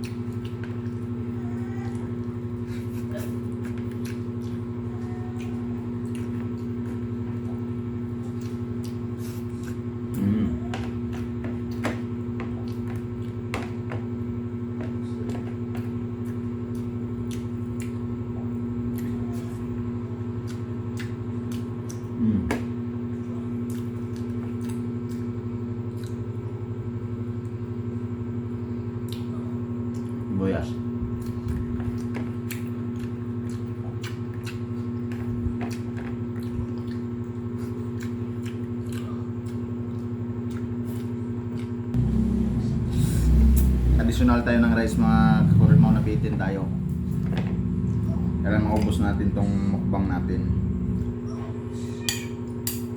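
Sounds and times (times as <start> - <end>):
wet chewing and mouth clicks: 0.0 - 1.2, 2.7 - 10.3, 16.2 - 19.5, 20.4 - 22.2, 23.2 - 26.5, 29.0 - 30.3, 31.1 - 42.0
steady low hum: 0.0 - 52.9.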